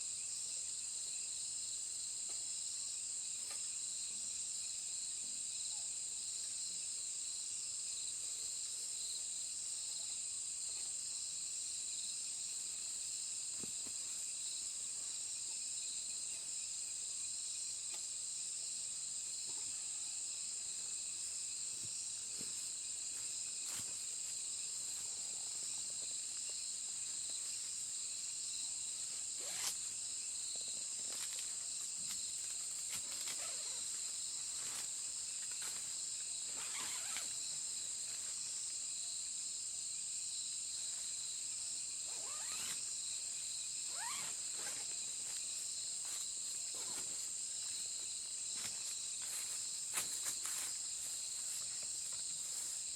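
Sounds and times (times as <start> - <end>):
insects chirping: 0.0 - 52.9.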